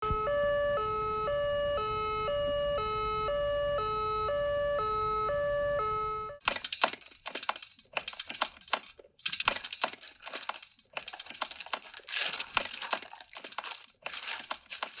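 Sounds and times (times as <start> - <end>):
two-tone ambulance siren: 0.0 - 6.4.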